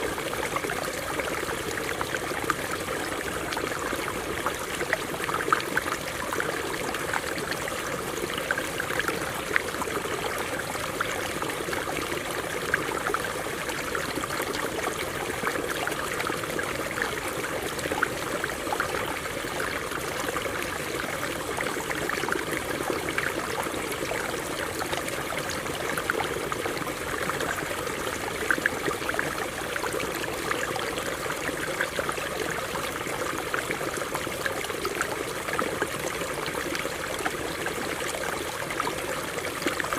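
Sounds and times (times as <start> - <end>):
stream water running over rocks: 0.0 - 39.9
water splashing and bubbling: 0.0 - 39.9.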